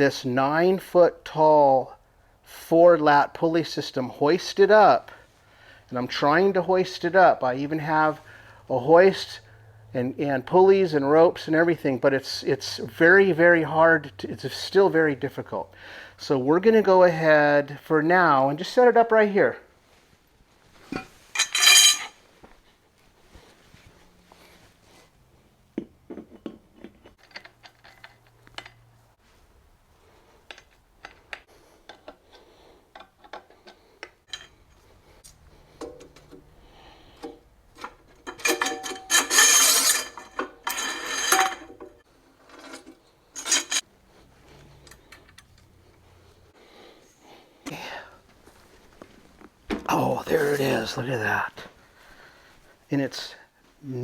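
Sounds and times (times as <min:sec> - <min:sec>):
metal bench parts clanking: 0:20.9 - 0:22.2, 0:37.7 - 0:43.8
metal scraping and ringing: 0:21.0 - 0:22.2, 0:38.2 - 0:43.8.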